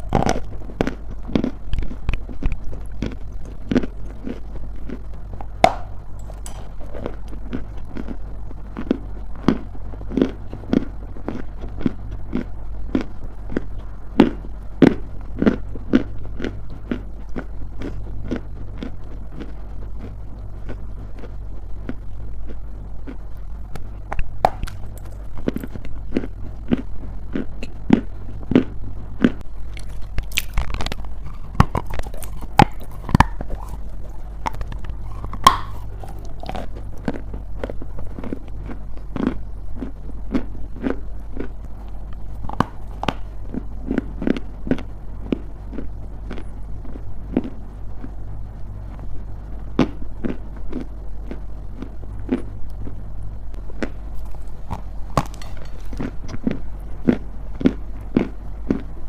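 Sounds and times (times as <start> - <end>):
crunchy clay being chewed: 0.0 - 59.0
steady low hum: 0.0 - 59.0.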